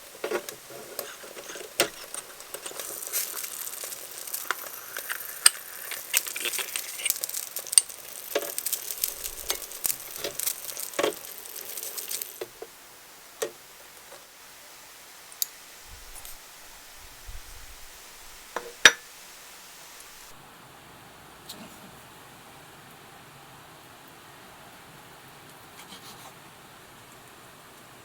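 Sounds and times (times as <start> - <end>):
food sizzling: 0.0 - 20.4.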